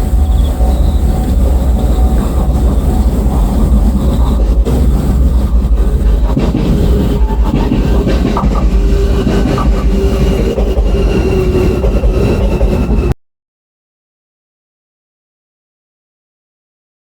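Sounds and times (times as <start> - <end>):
train wheels rumbling on rails: 0.0 - 13.2.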